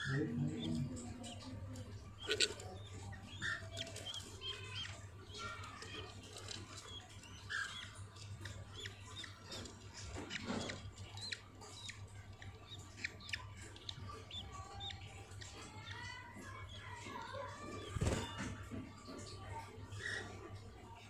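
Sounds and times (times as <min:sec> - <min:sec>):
budgerigars chirping: 0:00.0 - 0:16.2.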